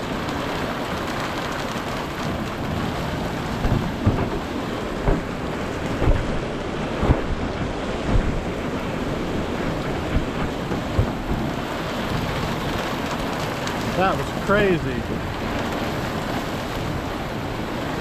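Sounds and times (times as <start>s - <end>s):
heavy rain pouring: 0.0s - 18.0s
sharp low thumps: 3.6s - 8.8s.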